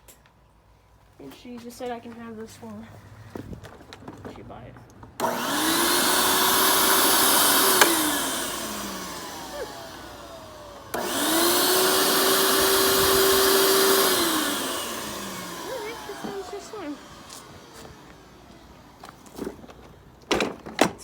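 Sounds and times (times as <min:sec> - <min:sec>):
vacuum cleaner switch click: 0:05.2 - 0:10.0
vacuum cleaner motor whining: 0:05.2 - 0:21.0.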